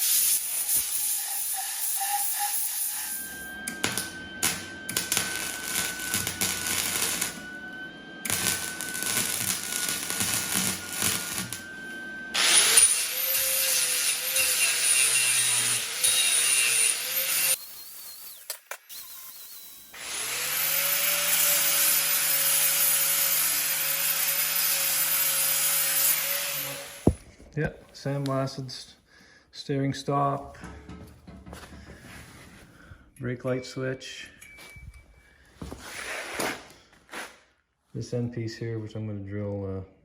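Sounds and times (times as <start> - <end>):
power tool motor running: 0.9 - 27.2.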